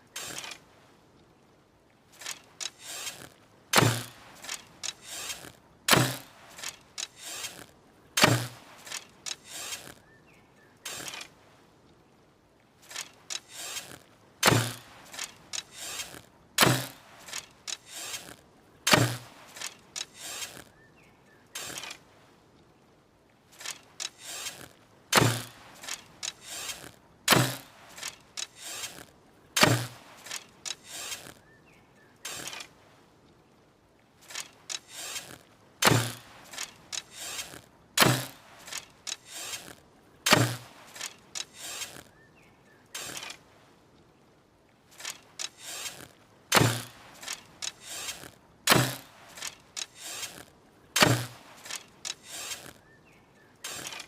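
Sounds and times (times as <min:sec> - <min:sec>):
bow clicks and creaks: 0:00.0 - 0:01.3, 0:02.0 - 0:12.0, 0:12.8 - 0:22.7, 0:23.4 - 0:33.5, 0:34.2 - 0:44.1, 0:44.8 - 0:54.0
heavy arrow thunk: 0:02.2 - 0:10.0, 0:12.9 - 0:20.7, 0:23.6 - 0:29.0, 0:29.6 - 0:31.4, 0:34.3 - 0:42.1, 0:45.0 - 0:50.4, 0:51.0 - 0:52.7.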